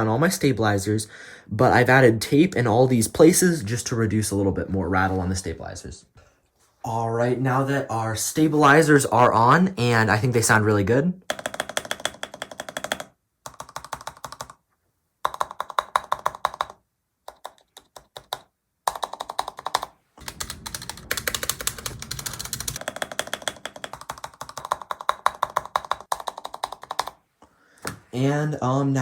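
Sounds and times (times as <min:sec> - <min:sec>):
mechanical keyboard keys clacking: 0:11.3 - 0:14.6, 0:15.3 - 0:27.2.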